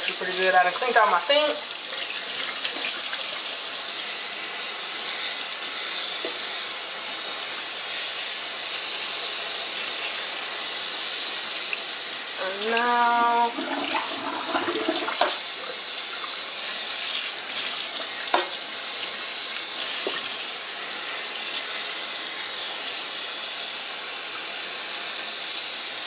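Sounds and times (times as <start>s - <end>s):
tap running into sink: 13.4s - 16.3s, 17.6s - 18.6s, 19.9s - 20.3s.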